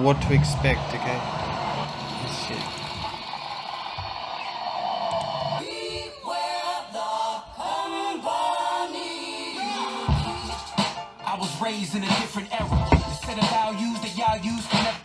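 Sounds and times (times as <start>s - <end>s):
hip-hop music: 0.0s - 4.3s, 5.6s - 15.0s
person singing: 5.6s - 15.0s.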